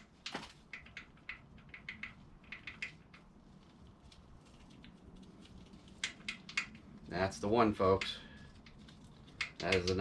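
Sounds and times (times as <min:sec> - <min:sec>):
small metallic clicks of engine parts: 0:00.0 - 0:03.3, 0:05.9 - 0:06.8, 0:07.9 - 0:10.0.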